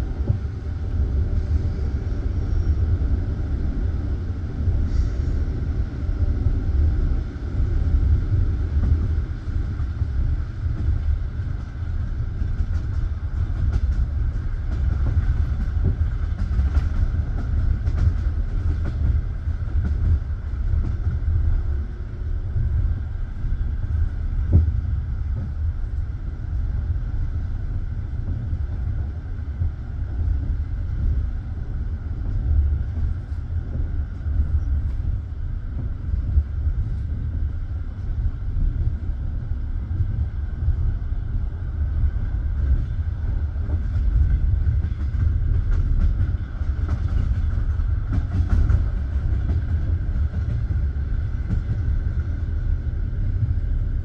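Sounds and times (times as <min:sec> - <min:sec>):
train wheels rumbling on track: 0:00.0 - 0:54.0
knocks of train wheels: 0:10.7 - 0:21.2, 0:43.6 - 0:52.0.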